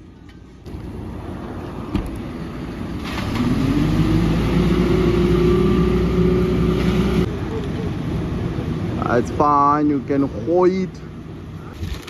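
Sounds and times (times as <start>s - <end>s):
concrete truck diesel engine revving: 0.7s - 7.4s.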